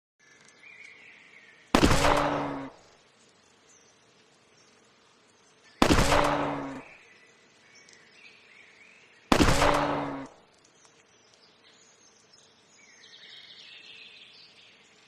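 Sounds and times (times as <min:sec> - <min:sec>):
birds chirping faintly: 0:00.2 - 0:15.0
pistol shots: 0:01.8 - 0:02.8, 0:05.8 - 0:06.9, 0:09.3 - 0:10.4.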